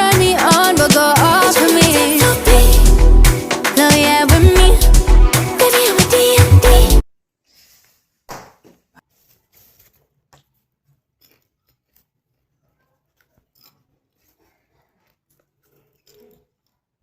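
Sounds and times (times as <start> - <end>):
faint crunches of chewing: 9.6 - 17.0.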